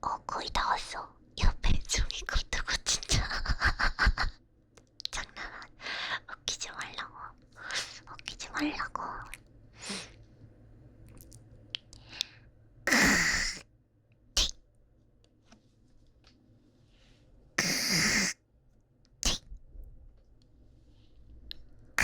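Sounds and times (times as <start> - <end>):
harsh throat-clearing: 12.9 - 13.6, 17.6 - 18.4
person spitting: 12.9 - 13.6, 17.6 - 18.4.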